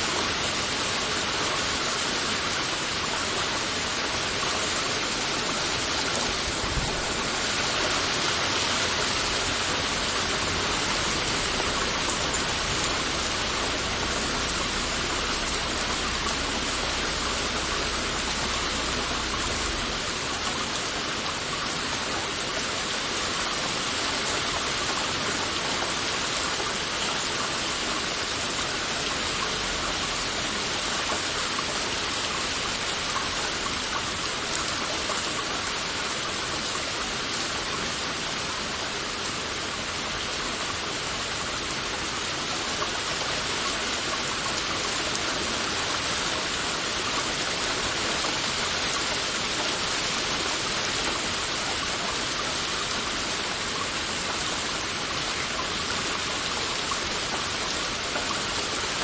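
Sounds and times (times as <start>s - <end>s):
heavy rain falling: 0.0s - 59.0s
low rumble: 10.7s - 20.7s.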